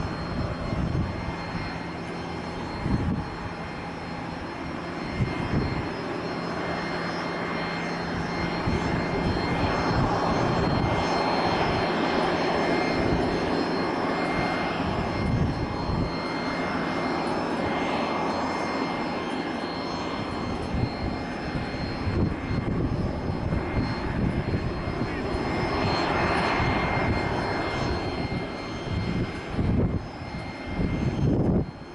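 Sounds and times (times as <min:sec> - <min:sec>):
jet engines rushing and whining: 0:00.0 - 0:31.9
wind buffeting microphone: 0:00.0 - 0:31.9.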